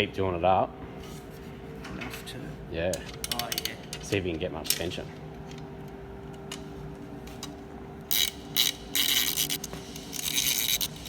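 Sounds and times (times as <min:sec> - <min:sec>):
ratchet spanner clicking: 0:08.1 - 0:11.0.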